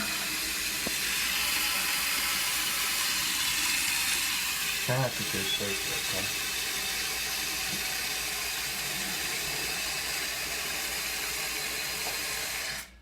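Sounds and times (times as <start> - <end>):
valve shutting off: 0.0 - 8.4
water hissing through toilet fill valve: 0.0 - 13.0.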